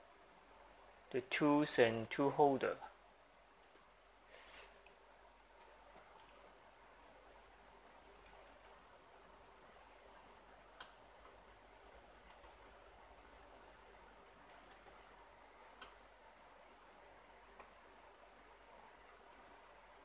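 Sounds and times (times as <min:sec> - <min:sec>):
low room hiss: 0:00.0 - 0:20.0
computer mouse clicks: 0:03.6 - 0:04.0, 0:05.6 - 0:06.4, 0:08.2 - 0:08.9, 0:10.8 - 0:11.4, 0:12.2 - 0:12.8, 0:14.4 - 0:16.1, 0:17.5 - 0:17.8, 0:19.0 - 0:19.7.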